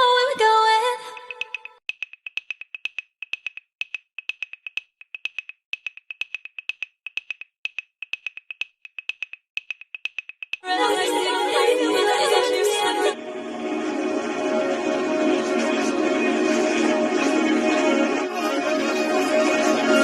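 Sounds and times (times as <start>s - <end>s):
high-pitched wood-block-like ticks: 1.1s - 10.7s
synthesizer chord: 10.7s - 20.0s.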